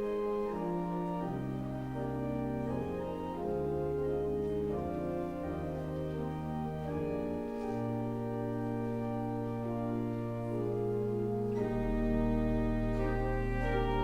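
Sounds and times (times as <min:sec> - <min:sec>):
organ chords: 0:00.0 - 0:14.0
low organ bass note: 0:11.3 - 0:14.0.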